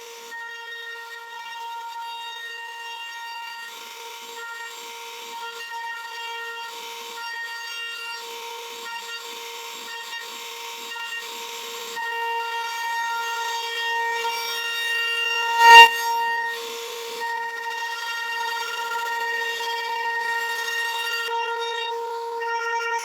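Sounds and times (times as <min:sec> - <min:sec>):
bit cutting into wood: 0:15.4 - 0:16.0.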